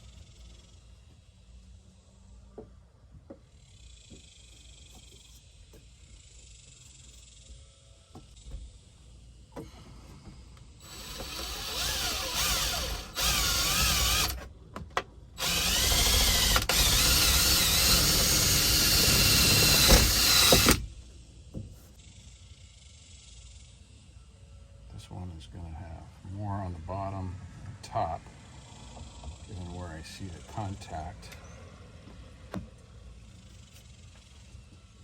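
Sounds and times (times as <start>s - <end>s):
cordless drill driving screws: 10.8s - 14.4s, 15.4s - 20.9s.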